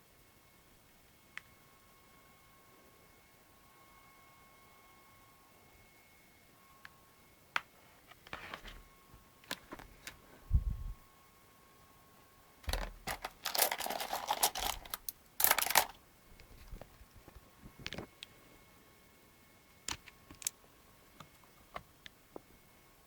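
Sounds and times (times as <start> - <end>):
plastic parts rustling and scraping: 8.1 - 8.8, 9.5 - 10.5, 12.7 - 18.1, 19.9 - 20.5.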